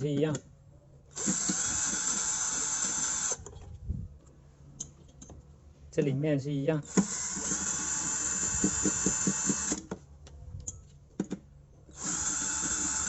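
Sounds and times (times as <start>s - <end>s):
electric drill spinning: 1.1s - 3.5s, 6.9s - 9.9s, 11.9s - 13.0s.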